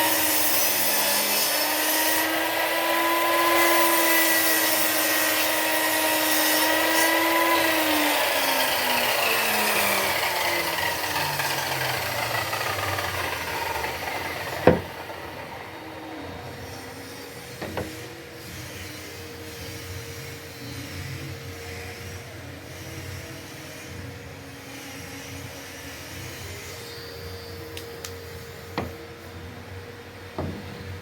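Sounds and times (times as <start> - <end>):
motor hum: 8.4 - 18.4
sharp knocks: 14.0 - 15.5, 17.6 - 18.1.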